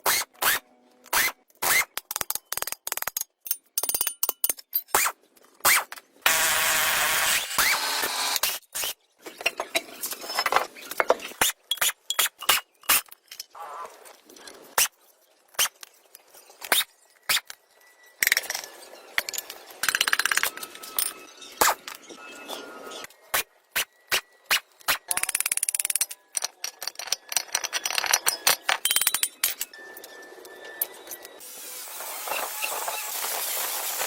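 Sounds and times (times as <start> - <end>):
metal tools clinking: 9.3 - 13.6, 14.3 - 23.3, 24.6 - 31.4.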